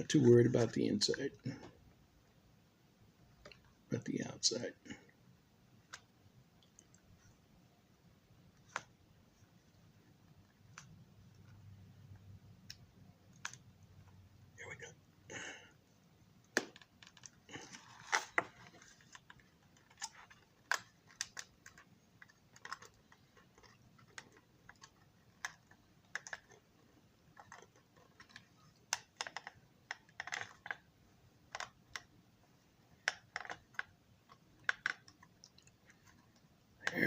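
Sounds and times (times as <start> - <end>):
plastic parts clicking and tapping: 16.4 - 26.7, 27.3 - 30.9, 31.5 - 32.2, 33.0 - 37.0.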